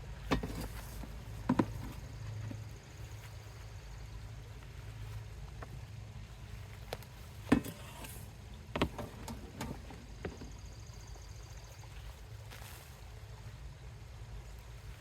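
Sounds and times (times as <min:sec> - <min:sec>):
steady low hum: 0:00.0 - 0:15.0
knocks and clunks: 0:00.2 - 0:02.0, 0:08.7 - 0:10.7.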